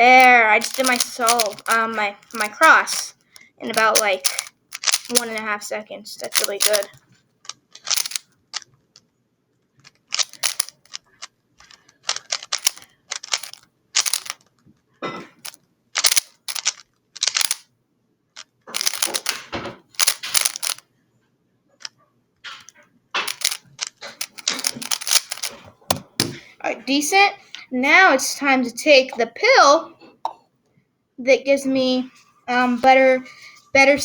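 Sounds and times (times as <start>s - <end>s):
plastic puzzle cube clicking: 0.0s - 3.1s, 3.7s - 5.5s, 6.2s - 8.7s, 9.8s - 14.5s, 15.4s - 17.6s, 18.7s - 20.8s, 22.5s - 26.4s.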